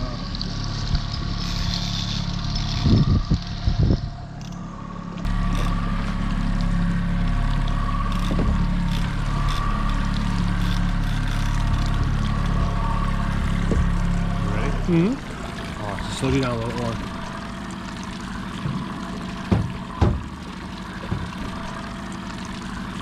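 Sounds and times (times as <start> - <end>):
boat motor running: 0.0 - 23.0
loud knocks: 18.6 - 20.4, 21.0 - 21.5.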